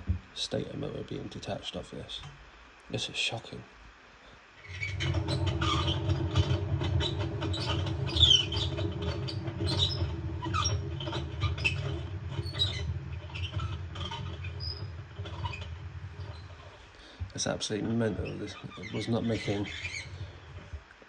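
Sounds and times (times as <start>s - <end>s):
washing machine drum bearings grinding: 4.6s - 21.0s
scraping and clicking: 4.7s - 21.0s.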